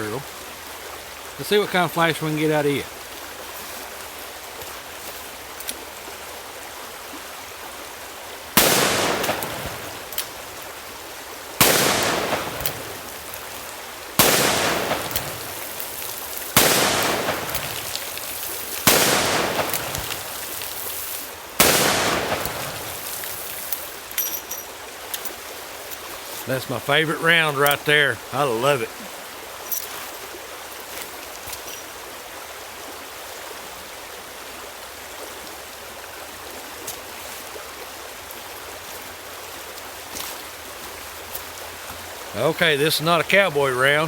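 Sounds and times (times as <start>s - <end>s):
steady hiss: 8.6s - 24.3s, 25.0s - 32.0s.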